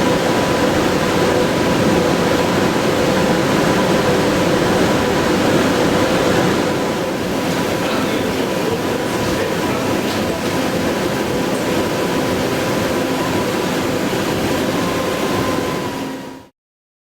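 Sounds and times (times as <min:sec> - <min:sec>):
milling machine cutting steel: 0:07.0 - 0:16.2.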